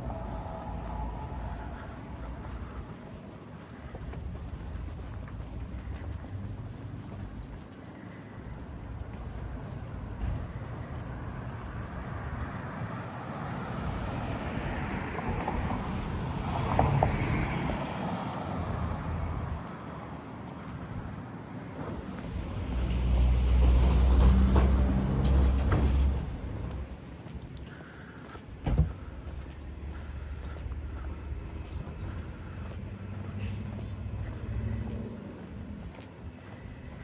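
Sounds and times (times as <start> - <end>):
large vehicle engine running: 0.0 - 7.6, 28.6 - 37.0
vehicle passing: 0.0 - 7.6, 8.7 - 37.0.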